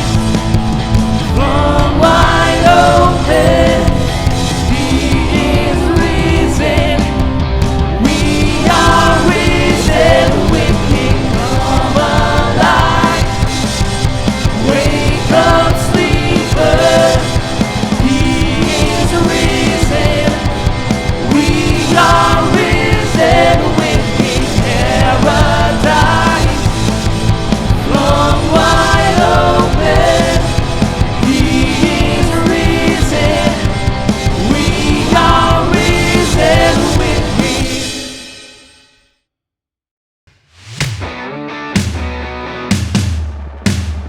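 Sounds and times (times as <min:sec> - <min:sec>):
song with singing and band: 0:00.0 - 0:38.6.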